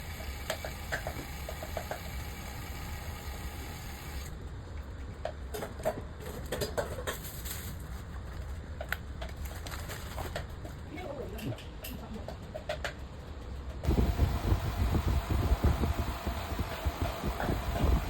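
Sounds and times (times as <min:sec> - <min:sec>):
steady low hum: 0:13.0 - 0:18.0.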